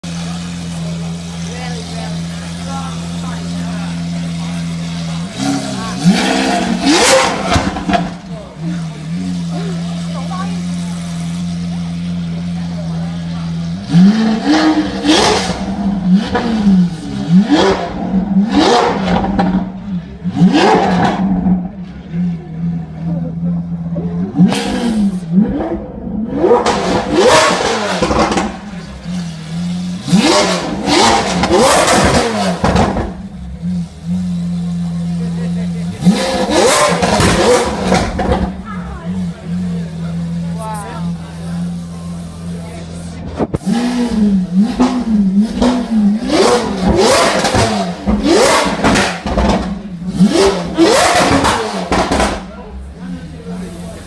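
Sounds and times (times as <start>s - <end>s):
engine revving: 0.0s - 54.0s
exhaust crackling: 0.0s - 54.0s
exhaust crackles and pops: 26.4s - 40.0s, 44.7s - 54.0s.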